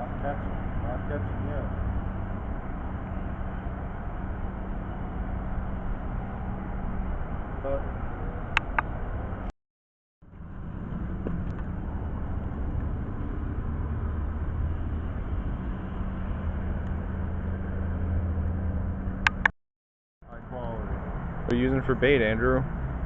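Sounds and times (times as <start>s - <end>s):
constant low hum: 0.0s - 9.5s
traffic rumble and hiss: 0.0s - 9.5s, 10.2s - 19.4s, 20.2s - 23.0s
sharp clicks: 8.6s - 8.9s, 19.3s - 19.6s.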